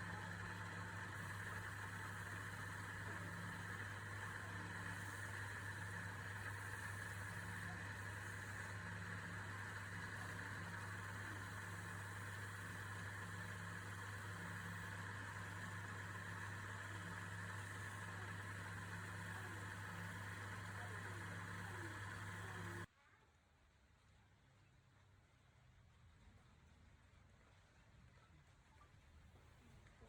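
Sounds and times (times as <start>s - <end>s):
electric motor humming: 0.0s - 22.9s.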